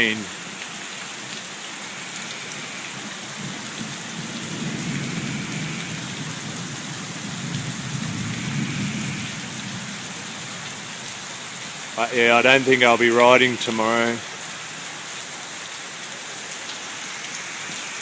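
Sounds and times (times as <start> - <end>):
gutters overflowing: 0.0 - 8.4
heavy rain pouring: 0.0 - 18.0
low rumble of thunder: 3.4 - 10.3.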